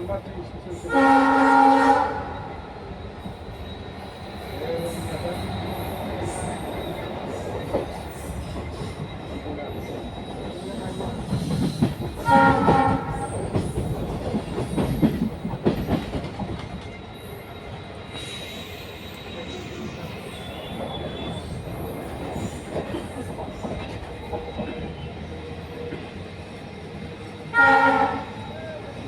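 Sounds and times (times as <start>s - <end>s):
train wheels clattering over rail joints: 4.8s - 17.1s
faint wheel squeal: 17.1s - 22.8s.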